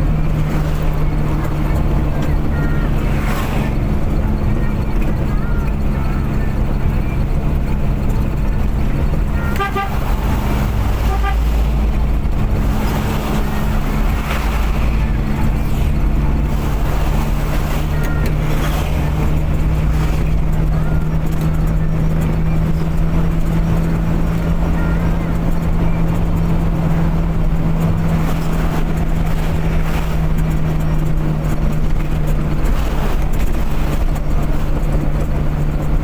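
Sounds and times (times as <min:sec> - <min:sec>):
road noise: 0:00.0 - 0:36.0
vehicle engine drone: 0:00.0 - 0:36.0
car horn toots: 0:09.1 - 0:12.3.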